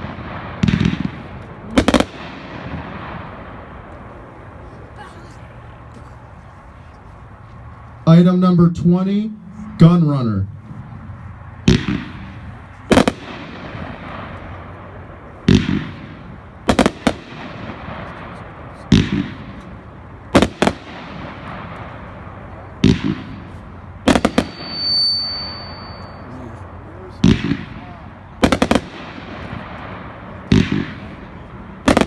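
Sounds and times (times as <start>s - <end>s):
fireworks bursting with sharp reports: 0.0s - 5.4s, 11.4s - 32.0s
firework whistle: 24.1s - 26.6s.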